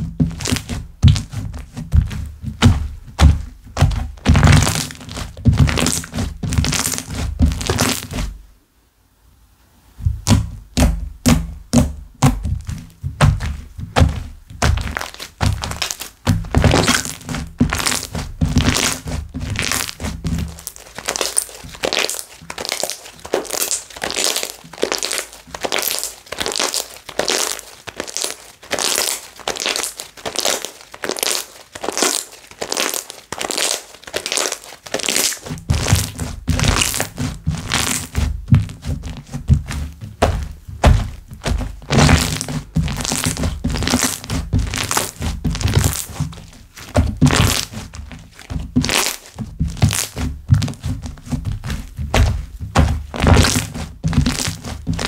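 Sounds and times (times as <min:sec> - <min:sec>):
dull low thuds: 0:00.0 - 0:08.4, 0:10.0 - 0:20.6, 0:35.6 - 0:55.0
slime squeezed and stretched: 0:00.3 - 0:08.2, 0:14.0 - 0:55.0.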